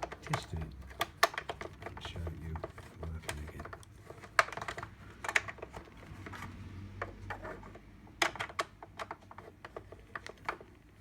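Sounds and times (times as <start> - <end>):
plastic casing clicks and knocks: 0.0 - 2.0.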